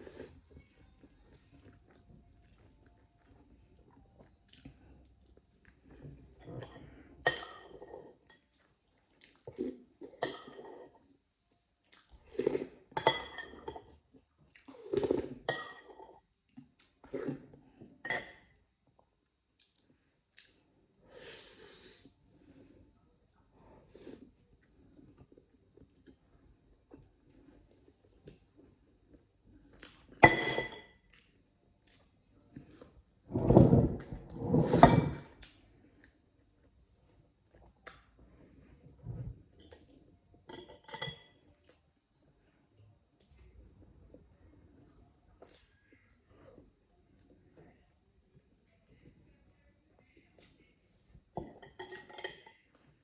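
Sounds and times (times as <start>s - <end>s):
kitchenware clinking: 30.2s - 30.9s.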